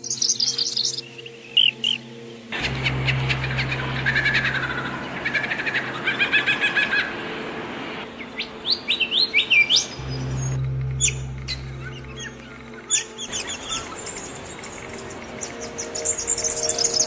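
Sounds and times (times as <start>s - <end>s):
songbirds singing: 0.0s - 7.0s, 8.0s - 17.0s
low steady hum: 2.5s - 8.6s, 9.8s - 17.0s.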